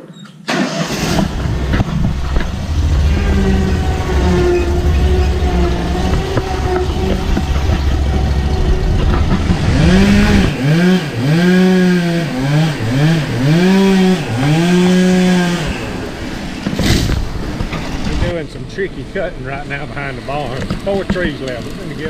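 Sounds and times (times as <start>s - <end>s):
chainsaw revving: 0.5s - 16.7s.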